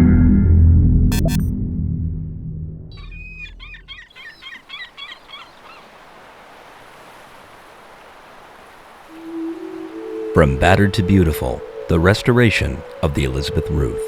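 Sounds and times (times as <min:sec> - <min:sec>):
low sound-effect tone: 0:00.0 - 0:03.0
bird calling with high cries: 0:02.9 - 0:07.1, 0:08.2 - 0:14.0
steady outdoor hiss: 0:03.0 - 0:14.0.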